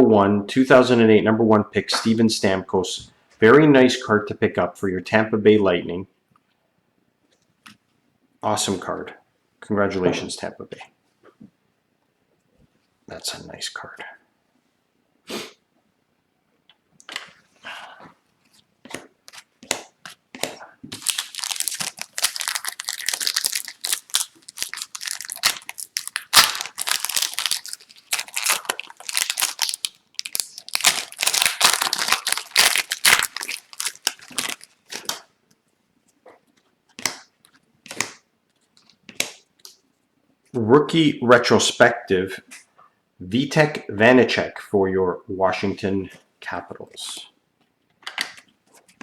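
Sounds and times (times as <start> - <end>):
wrapper tearing and crinkling: 20.9 - 35.1.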